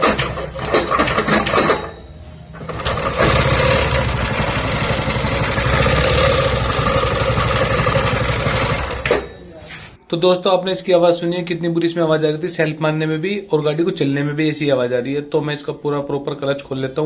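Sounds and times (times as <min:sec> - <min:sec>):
scooter engine mechanical rattle: 0:00.0 - 0:09.5.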